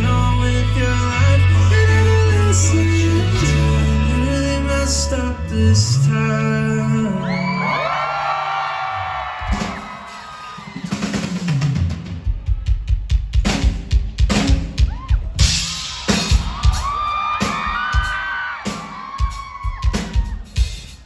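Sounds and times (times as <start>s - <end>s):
rock drum solo: 9.2s - 21.0s.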